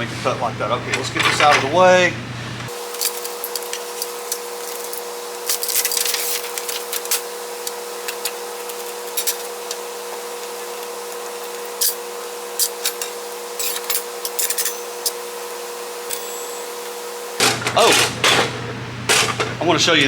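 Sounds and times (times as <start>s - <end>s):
steady hum: 0.0s - 20.0s
metal parts clicking and scraping: 2.9s - 9.5s, 11.4s - 12.0s, 12.6s - 15.2s, 16.1s - 18.4s.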